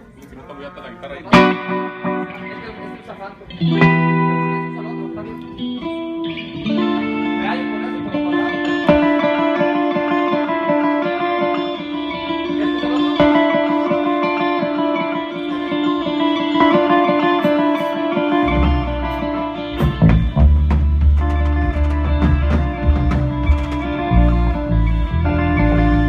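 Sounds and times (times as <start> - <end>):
electric guitar picking: 1.2 - 26.0
deep bass notes: 18.4 - 26.0.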